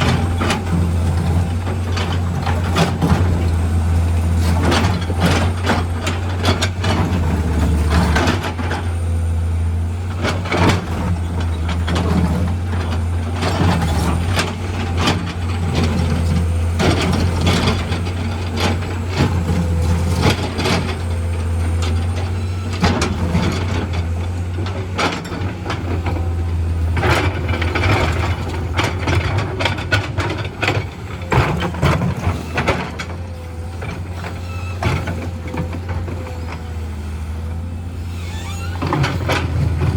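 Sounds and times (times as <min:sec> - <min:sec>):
diesel engine drone: 0:00.0 - 0:39.9.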